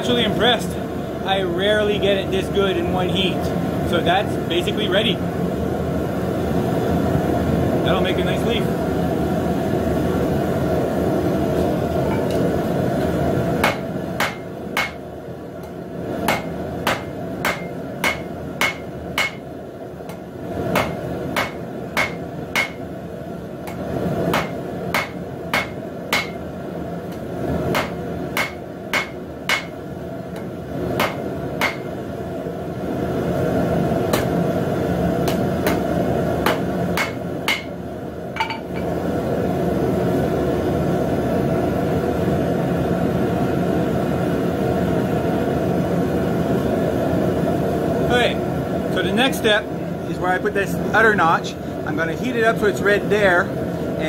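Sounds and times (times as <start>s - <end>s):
hammer striking steel on anvil: 13.6s - 15.0s, 16.3s - 19.4s, 20.1s - 22.8s, 23.7s - 26.4s, 27.1s - 29.8s, 30.4s - 31.9s, 35.2s - 37.8s, 38.4s - 38.9s.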